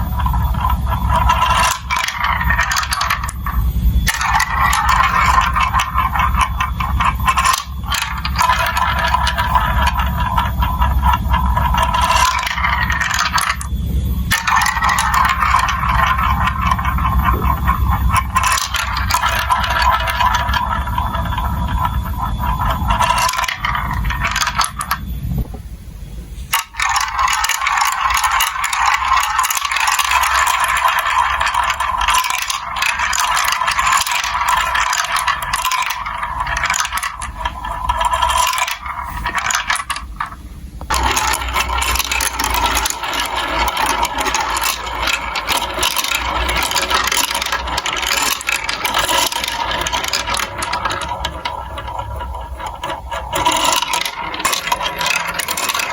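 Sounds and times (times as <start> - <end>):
marbles rattling through plastic track: 0.0 - 25.5, 26.5 - 55.9.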